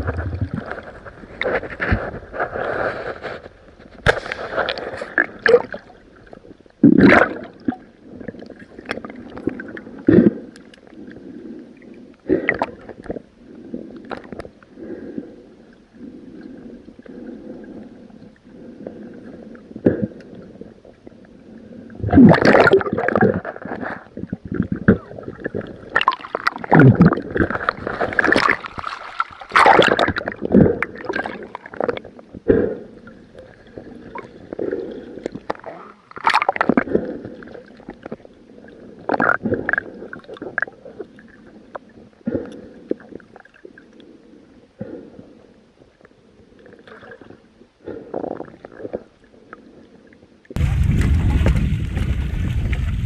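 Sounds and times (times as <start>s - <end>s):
water gurgling and splashing: 0.0s - 3.1s, 4.2s - 6.2s, 6.8s - 10.3s, 22.1s - 32.0s, 50.6s - 53.0s.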